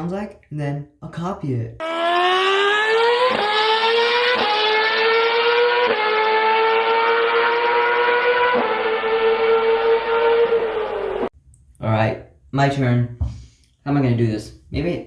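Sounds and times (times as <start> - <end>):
racing engine accelerating: 1.8 - 11.3.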